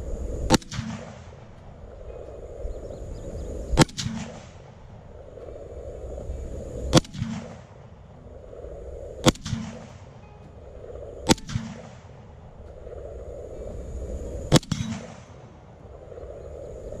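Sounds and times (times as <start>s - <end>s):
rifle shots: 0.5s - 1.5s, 3.8s - 4.6s, 6.9s - 7.9s, 9.2s - 10.1s, 11.2s - 12.2s, 14.5s - 15.5s.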